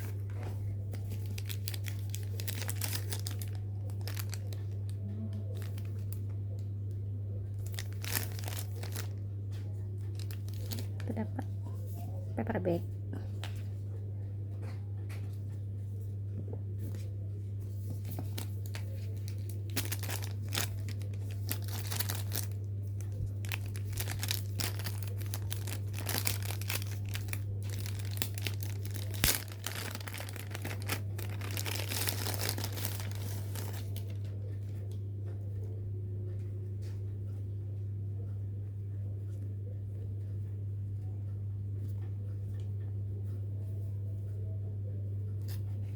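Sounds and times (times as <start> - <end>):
packaging crinkling and rustling: 0.0 - 6.6, 7.5 - 11.5, 17.8 - 34.7.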